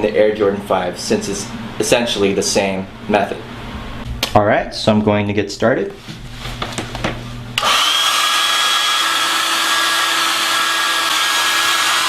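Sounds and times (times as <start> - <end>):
hair dryer blowing: 7.6 - 12.0.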